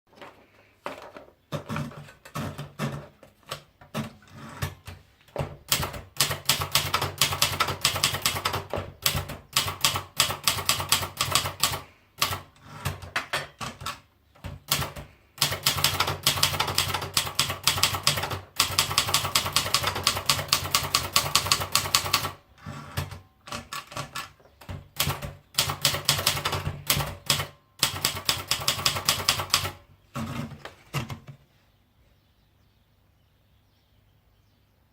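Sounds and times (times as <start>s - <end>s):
manual typewriter key strikes: 5.6s - 22.4s, 23.0s - 30.3s.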